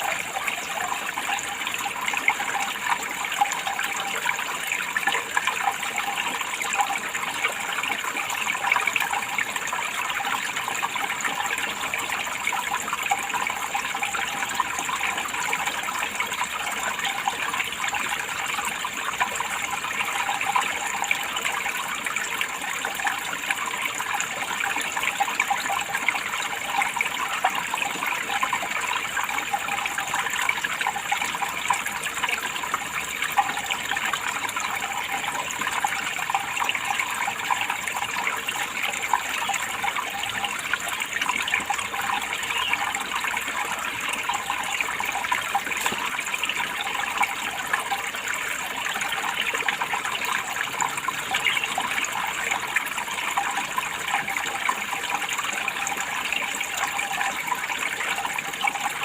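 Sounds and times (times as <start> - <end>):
water running and splashing: 0.0 - 59.0.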